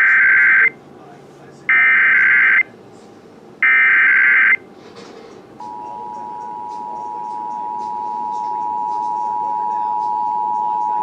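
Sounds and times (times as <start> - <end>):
steady two-tone attention signal: 5.6 - 11.0.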